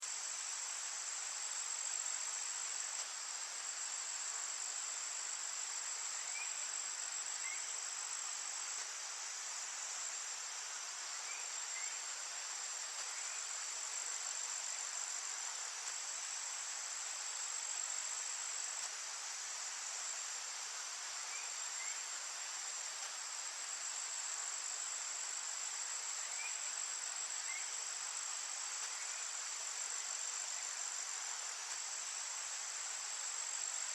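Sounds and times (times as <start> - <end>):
high-pitched insect chorus: 0.0 - 33.9
faint bird chirps: 6.2 - 6.7, 7.4 - 7.8, 21.2 - 22.1, 26.2 - 26.8, 27.4 - 27.8.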